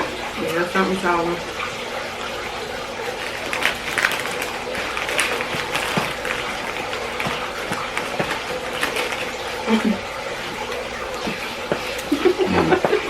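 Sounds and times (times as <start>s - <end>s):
chewing a sandwich: 1.6s - 12.8s
wrapper rustling: 2.2s - 12.5s.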